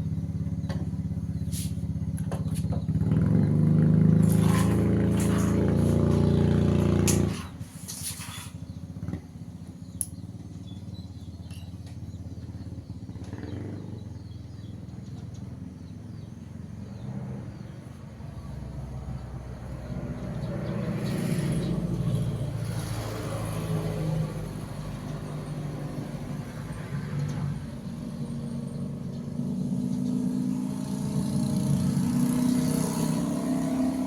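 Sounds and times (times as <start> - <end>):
small engine humming: 0.0 - 24.8.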